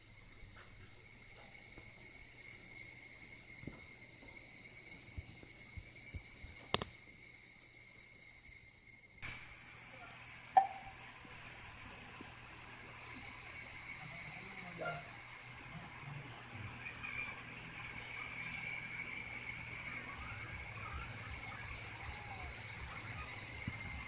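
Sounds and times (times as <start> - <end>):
insects chirring: 0.0 - 24.0
short sharp sound: 10.6 - 11.0.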